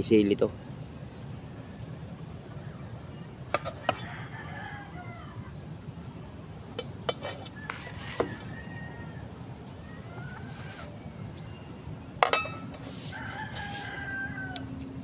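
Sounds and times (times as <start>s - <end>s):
dishes and utensils clinking: 3.6s - 4.0s, 6.8s - 8.5s, 12.2s - 13.9s.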